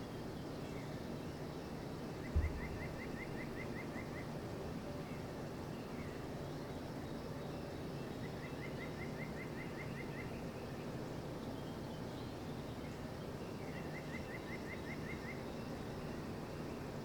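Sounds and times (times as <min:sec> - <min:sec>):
songbird singing: 0:02.2 - 0:04.3.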